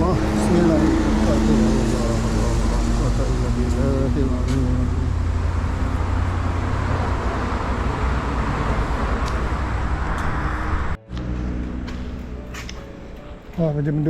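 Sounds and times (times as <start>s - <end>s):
traffic rushing past: 0.0s - 14.0s.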